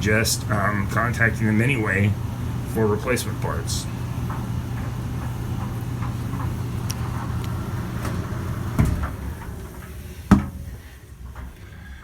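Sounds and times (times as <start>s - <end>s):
clothes dryer humming: 0.0s - 12.0s
knock: 10.3s - 10.6s.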